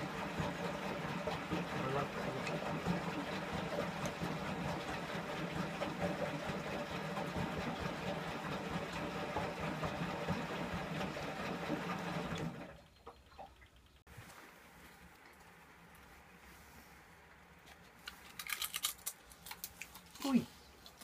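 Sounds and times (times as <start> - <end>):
washing machine motor hum: 0.0 - 14.0
water churning: 0.0 - 14.0.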